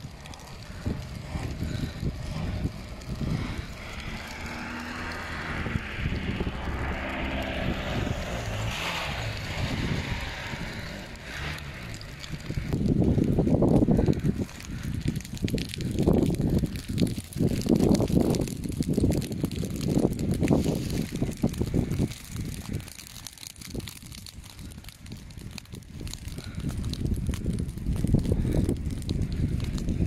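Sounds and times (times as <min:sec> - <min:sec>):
vehicle passing on highway: 0:00.0 - 0:23.1
wind buffeting microphone: 0:00.0 - 0:30.0.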